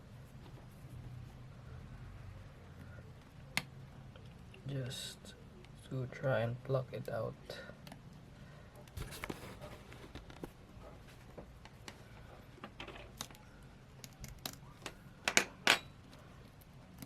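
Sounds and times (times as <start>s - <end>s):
tweezers clicking on plastic: 14.0s - 15.0s.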